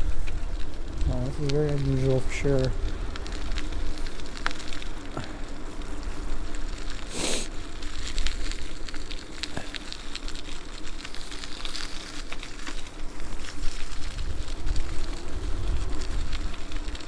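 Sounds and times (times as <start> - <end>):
bike tyres rolling on slushy pavement: 0.0 - 17.0
wind rumble on microphone: 0.0 - 17.0.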